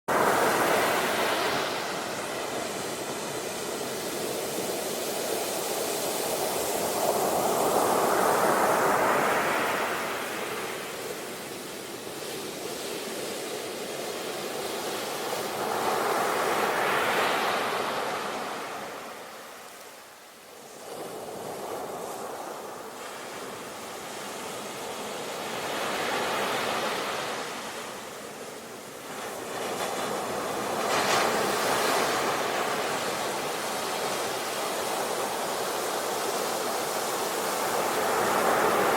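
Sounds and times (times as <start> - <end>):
sea waves breaking: 0.1 - 11.4.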